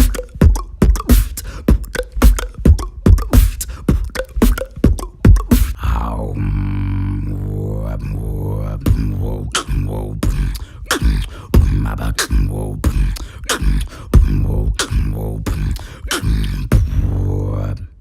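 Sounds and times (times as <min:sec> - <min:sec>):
beatboxing mouth snaps: 0:00.0 - 0:05.8, 0:08.9 - 0:17.1
low hummed bass: 0:04.8 - 0:17.9.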